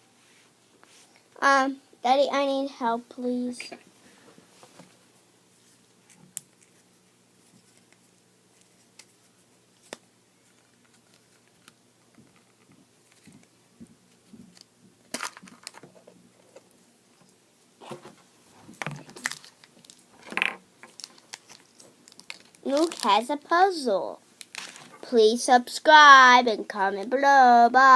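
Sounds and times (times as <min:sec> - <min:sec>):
wrapping crinkling and rustling: 0:05.6 - 0:16.8, 0:18.6 - 0:23.8, 0:24.4 - 0:25.1.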